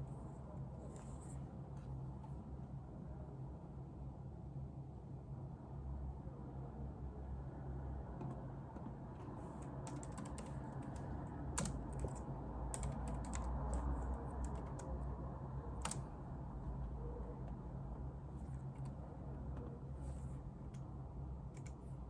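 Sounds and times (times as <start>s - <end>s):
typing on computer keyboard: 9.2s - 15.0s, 15.7s - 16.1s, 21.5s - 21.9s.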